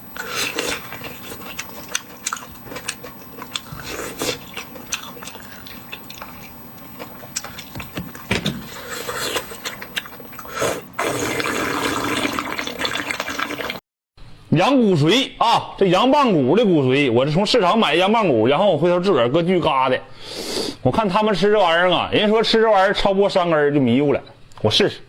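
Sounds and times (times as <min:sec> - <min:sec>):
loud steady sucking: 0:10.4 - 0:13.7.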